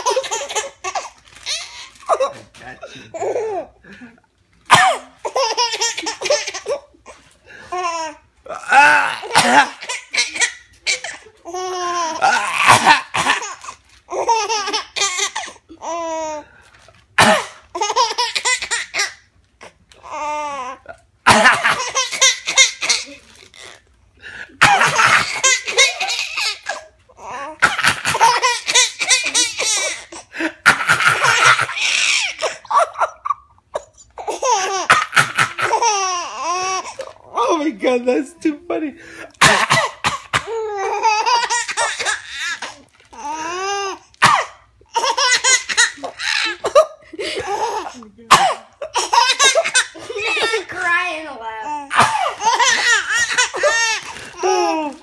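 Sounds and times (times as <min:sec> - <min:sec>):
baby laughing: 0:00.0 - 0:03.8, 0:05.2 - 0:16.4, 0:17.7 - 0:19.2, 0:20.0 - 0:23.8, 0:24.6 - 0:37.3, 0:39.4 - 0:44.0, 0:44.9 - 0:48.0, 0:48.8 - 0:55.0
man coughing: 0:04.7 - 0:05.2, 0:08.5 - 0:10.5, 0:12.2 - 0:13.5, 0:17.2 - 0:17.6, 0:21.2 - 0:22.0, 0:24.3 - 0:25.6, 0:39.0 - 0:40.6, 0:44.2 - 0:44.6, 0:46.4 - 0:50.6, 0:51.9 - 0:52.9.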